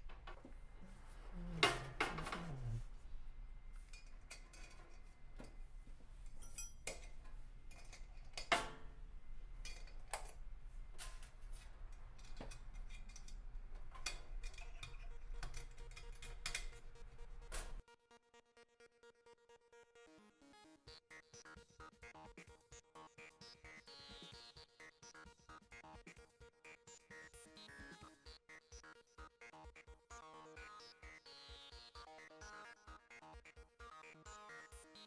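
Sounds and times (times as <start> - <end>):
metal hardware clicking and clinking: 3.8 - 5.6, 6.2 - 9.0, 9.6 - 17.8.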